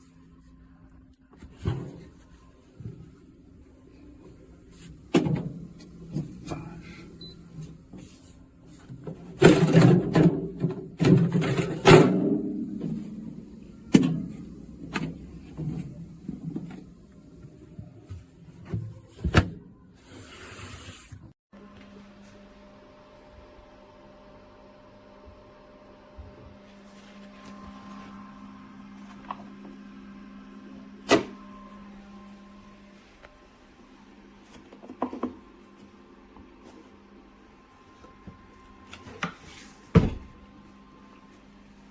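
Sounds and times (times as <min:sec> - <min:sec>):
low steady hum: 0:00.0 - 0:18.8.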